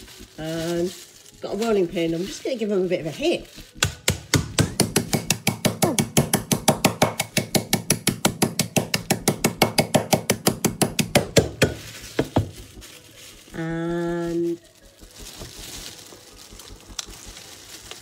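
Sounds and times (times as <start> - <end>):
rolling pin beating nuts in bag: 0.0 - 12.8.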